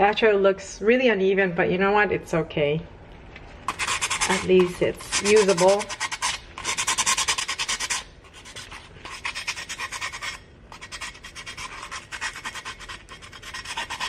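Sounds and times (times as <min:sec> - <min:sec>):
sandpaper rubbing on glass: 0:03.7 - 0:14.0.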